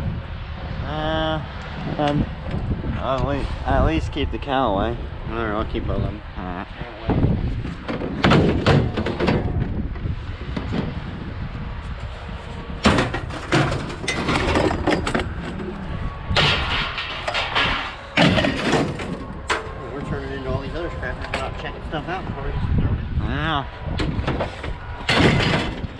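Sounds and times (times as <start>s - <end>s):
scrap metal clanking into truck bed: 7.8s - 9.6s, 12.8s - 19.8s, 24.2s - 25.9s.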